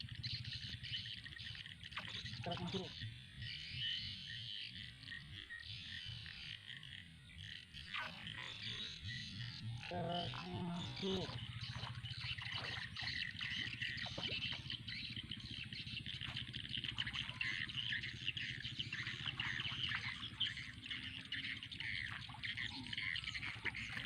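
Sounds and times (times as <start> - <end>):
low hum: 0.0 - 24.0
small animals chirping: 7.8 - 24.0.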